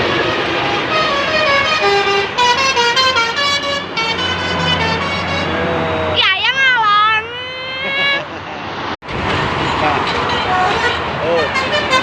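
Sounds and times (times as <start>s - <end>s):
vehicle engine humming: 0.0s - 12.0s
musical air horn playing a tune: 0.2s - 5.7s.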